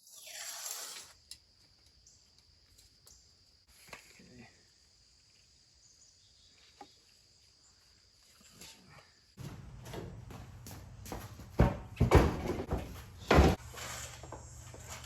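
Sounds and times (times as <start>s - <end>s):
insect trill: 0.2s - 9.4s.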